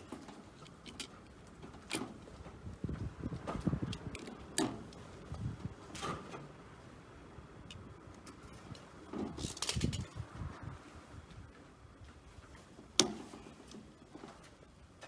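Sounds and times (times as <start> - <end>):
tools clicking and tapping: 0.0 - 2.2, 3.8 - 5.1, 13.0 - 13.8.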